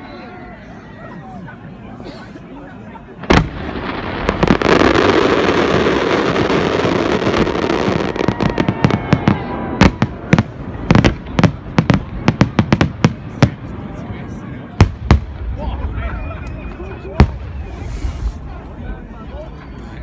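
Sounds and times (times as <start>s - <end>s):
fireworks sharp bangs: 3.2s - 13.7s
fireworks crackling: 3.2s - 13.8s.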